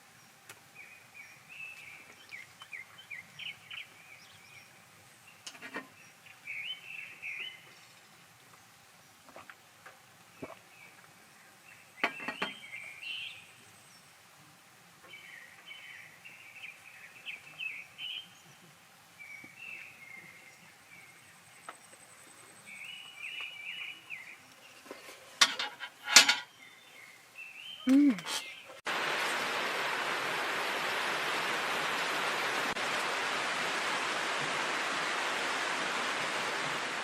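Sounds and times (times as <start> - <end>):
faint steady hiss: 0.0 - 37.0
songbirds chirping: 0.0 - 37.0.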